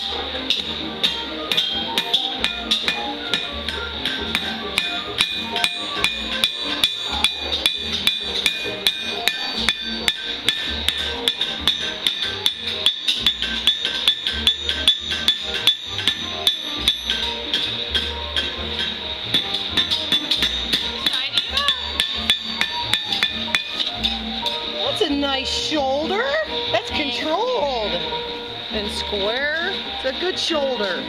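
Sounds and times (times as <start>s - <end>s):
hammer striking steel on anvil: 0.0s - 24.6s
music: 0.0s - 31.0s.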